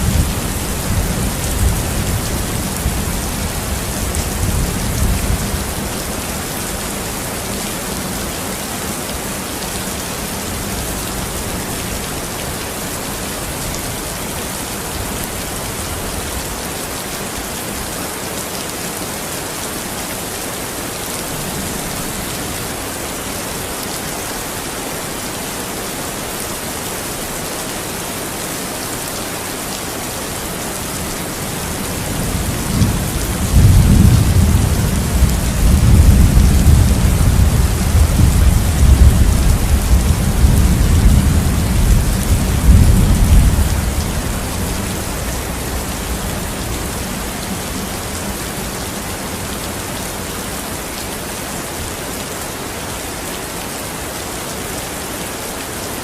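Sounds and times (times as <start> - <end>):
heavy rain falling: 0.0 - 56.0
thunder rumble: 31.9 - 47.3.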